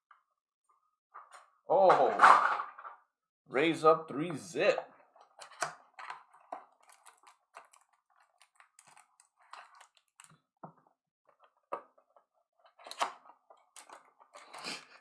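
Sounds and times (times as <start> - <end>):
fingers picking at packaging: 5.4 - 10.3.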